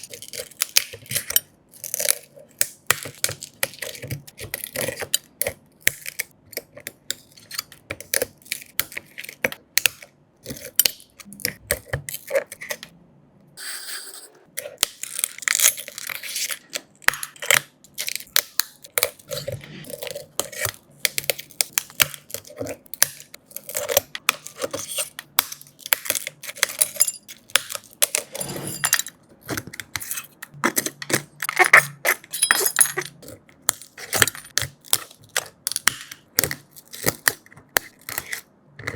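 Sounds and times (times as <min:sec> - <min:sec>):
metal hand tools clicking and scraping: 0:28.0 - 0:35.2.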